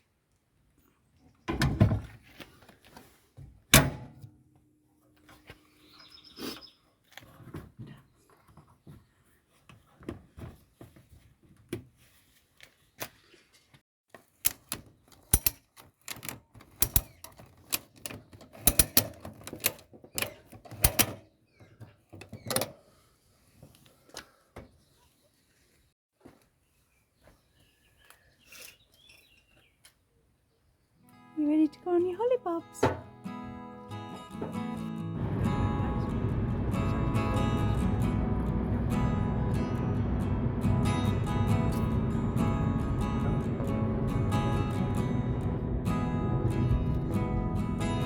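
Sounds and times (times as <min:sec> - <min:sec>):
sharp clicks and knocks: 0:14.4 - 0:21.2.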